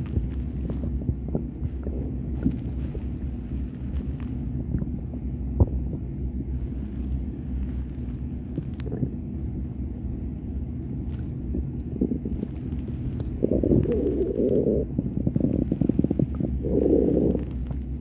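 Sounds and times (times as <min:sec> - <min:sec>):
stomach rumbling: 0:00.0 - 0:18.0
faint gurgles: 0:11.5 - 0:17.8.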